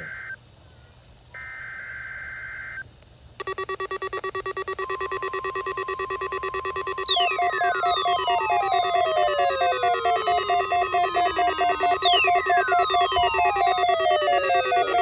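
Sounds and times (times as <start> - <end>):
buzzy two-tone data burst: 3.4 - 15.0
pulsing electronic alert tones: 3.4 - 15.0.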